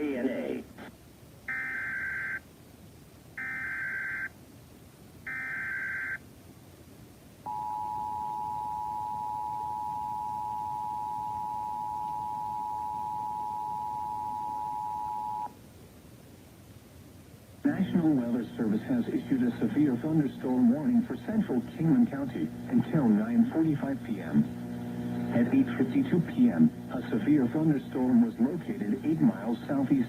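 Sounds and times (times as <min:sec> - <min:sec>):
two-tone attention signal: 0:07.5 - 0:15.5.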